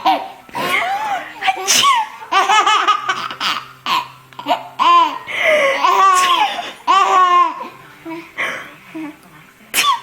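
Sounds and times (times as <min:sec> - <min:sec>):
baby laughing: 0:00.0 - 0:07.8.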